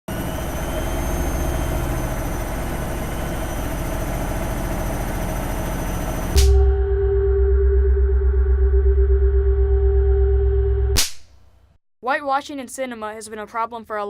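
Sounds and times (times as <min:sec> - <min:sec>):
machine hum: 0:00.1 - 0:11.0
steady ringing tone: 0:00.2 - 0:10.9.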